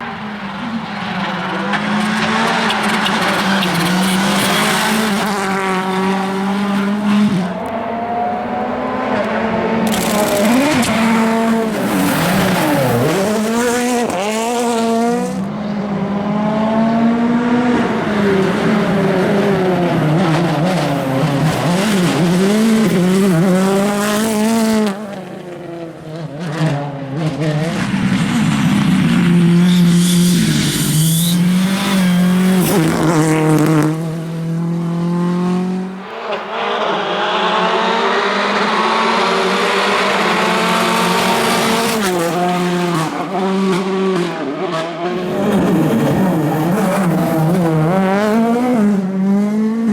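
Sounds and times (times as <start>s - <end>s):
rally car engines revving: 0.0s - 49.9s
car passing by: 29.2s - 48.8s.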